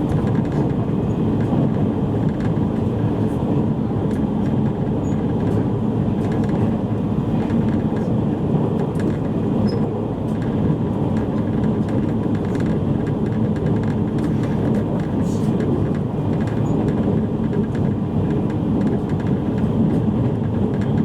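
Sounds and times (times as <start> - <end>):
train wheels rumbling on rails: 0.0 - 21.0.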